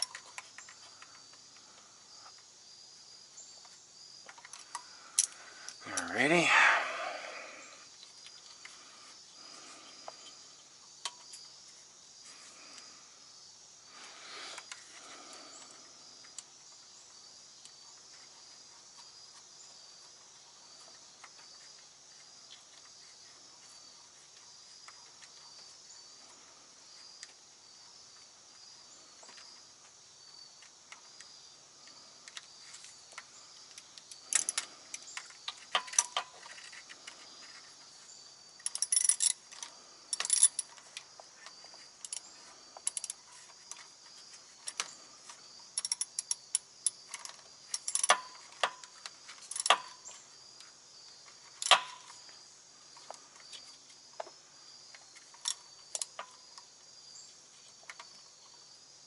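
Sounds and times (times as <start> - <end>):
high-pitched insect chirping: 0.0 - 59.0
sharp metal clicks and clinks: 38.6 - 40.8, 45.7 - 48.8, 49.4 - 50.2, 51.6 - 52.1.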